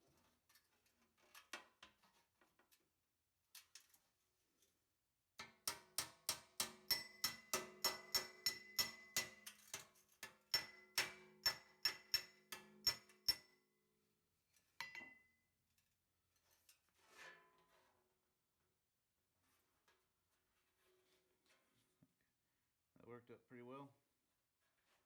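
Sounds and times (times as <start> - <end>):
hammer striking sheet metal: 5.5 - 9.6, 10.6 - 13.4.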